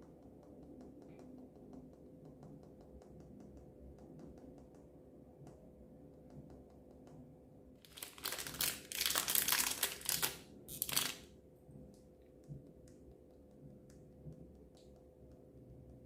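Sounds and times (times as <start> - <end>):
crinkling and rustling: 7.8 - 11.2.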